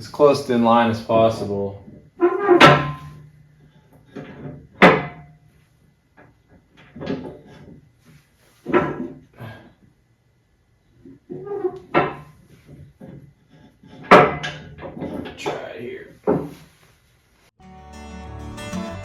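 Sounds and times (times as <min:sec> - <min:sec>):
hard parts knocking and clunking: 0:11.9 - 0:15.5.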